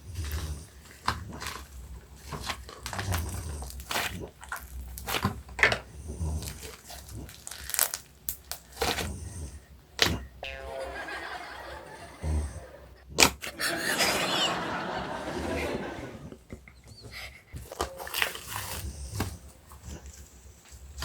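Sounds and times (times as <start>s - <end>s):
crinkling and crackling: 0.0s - 9.2s, 17.6s - 21.0s.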